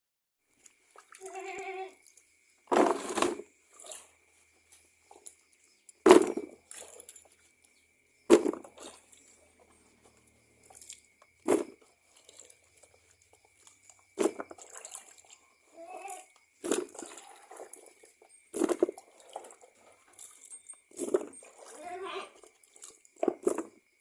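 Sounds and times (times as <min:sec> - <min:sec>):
cow eating noisily: 0:11.9 - 0:23.1.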